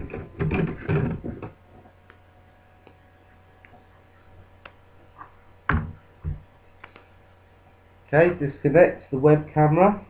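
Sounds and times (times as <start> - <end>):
loud knock: 5.7 - 6.5.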